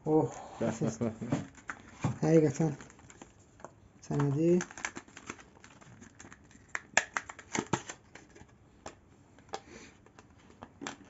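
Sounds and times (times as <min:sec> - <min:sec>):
paper or plastic rustling: 0:04.1 - 0:08.5
packaging light clicks and taps: 0:06.1 - 0:08.0.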